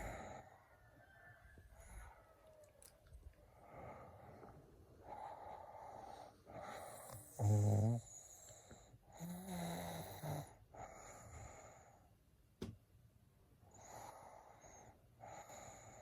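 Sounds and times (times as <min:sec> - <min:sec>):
person snoring: 0:06.0 - 0:08.3, 0:09.2 - 0:10.6.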